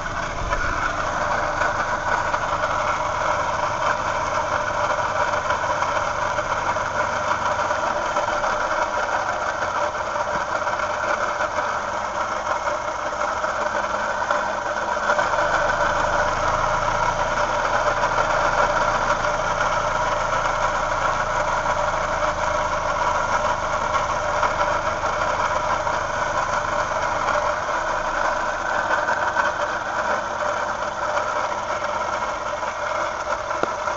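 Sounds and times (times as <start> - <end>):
low hum: 0.0 - 4.7
car engine idling with whine: 0.0 - 33.9.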